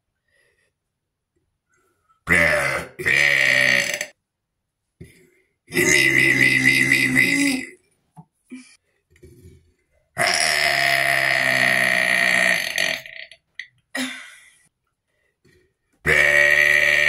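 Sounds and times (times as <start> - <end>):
person burping: 2.3 - 4.2, 5.7 - 7.8, 10.2 - 14.4, 16.0 - 17.0.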